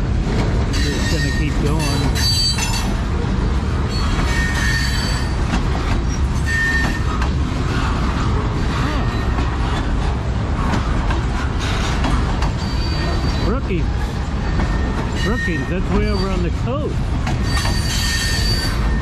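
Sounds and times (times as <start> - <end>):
train wheels rumbling on rail: 0.0 - 19.0
high wheel squeals: 0.7 - 2.9, 3.9 - 5.4, 6.0 - 7.2, 12.6 - 13.6, 14.5 - 16.5, 17.4 - 19.0.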